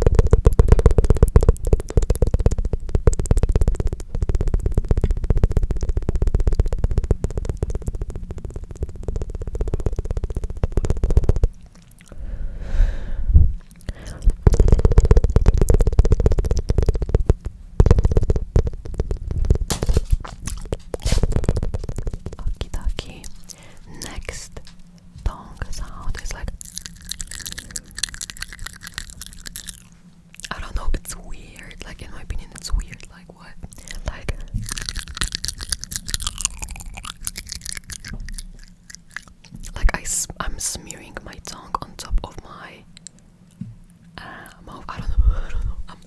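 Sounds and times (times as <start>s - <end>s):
tongue fluttering wet clicks: 0.0s - 12.2s, 13.6s - 46.0s
breathy puffs: 6.8s - 15.4s, 16.8s - 24.6s, 32.4s - 34.8s, 44.2s - 46.0s.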